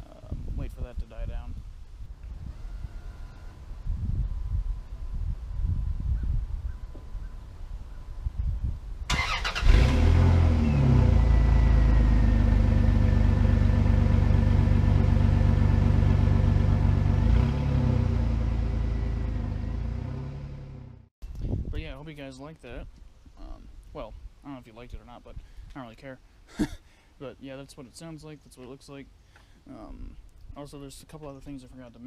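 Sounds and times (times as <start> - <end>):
wind buffeting microphone: 0.2 - 9.2, 21.2 - 22.1
pickup engine starting and idling: 9.1 - 20.5.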